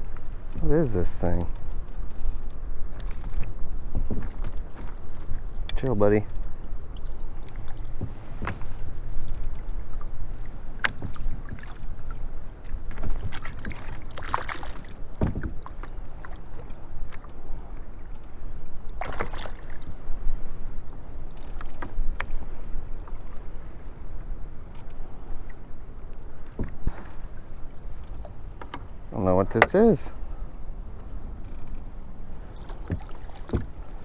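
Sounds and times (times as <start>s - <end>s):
rustling or splashing: 0.0s - 30.3s, 31.1s - 34.0s
sharp knocks and clicks: 15.2s - 15.6s, 29.5s - 29.8s, 32.9s - 33.7s.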